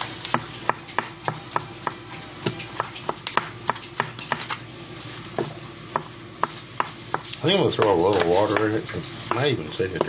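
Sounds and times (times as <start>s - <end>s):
utensil chopping meat: 0.0s - 4.6s, 5.3s - 10.0s.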